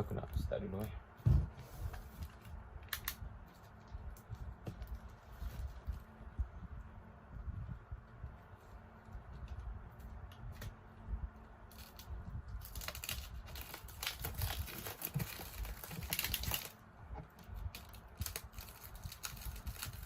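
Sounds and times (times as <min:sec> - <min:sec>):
packaging crinkling and rustling: 0:01.8 - 0:06.2, 0:11.7 - 0:20.0
packaging tape tearing: 0:11.7 - 0:16.8, 0:17.7 - 0:20.0.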